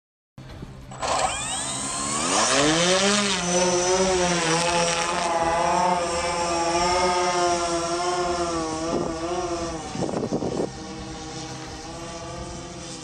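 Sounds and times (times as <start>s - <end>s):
drone propellers humming: 0.4s - 13.0s.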